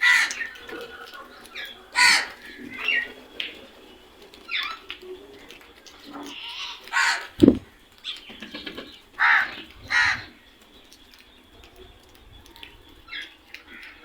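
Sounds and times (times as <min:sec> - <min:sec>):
crows cawing: 0:00.0 - 0:00.5, 0:02.0 - 0:02.5, 0:07.0 - 0:07.6.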